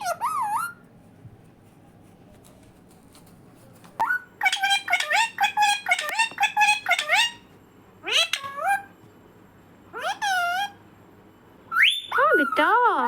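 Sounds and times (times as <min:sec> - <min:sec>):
parakeet calling: 0:00.0 - 0:00.8, 0:04.0 - 0:09.0, 0:09.9 - 0:10.8, 0:11.7 - 0:13.0
parakeet squawks: 0:00.0 - 0:00.8, 0:04.0 - 0:09.0, 0:09.9 - 0:10.8, 0:11.7 - 0:12.9.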